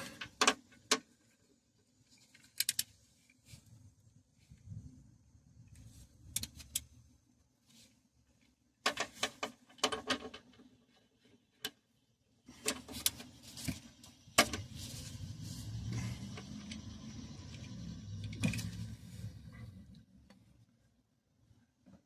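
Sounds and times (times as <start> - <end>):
clicks and rattles of handled objects: 0.0 - 3.6, 8.4 - 11.8
faint low rumble: 13.7 - 21.5.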